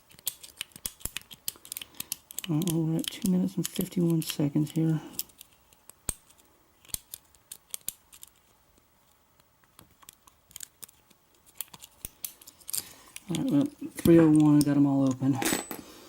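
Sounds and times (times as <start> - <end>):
lock pick clicking and scraping: 0.1 - 8.4.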